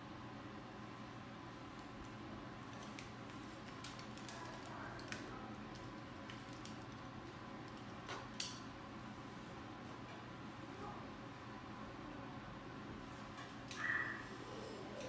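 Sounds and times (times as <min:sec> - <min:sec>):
low room hum: 0:00.0 - 0:15.0.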